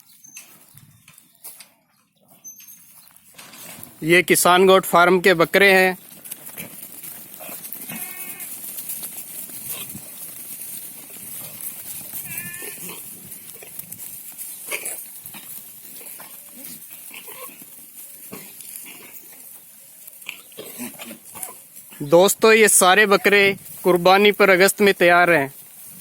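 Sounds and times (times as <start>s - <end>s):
clicks and rustles: 5.5s - 22.0s
goats bleating: 6.6s - 8.9s, 11.3s - 13.8s, 14.6s - 19.4s.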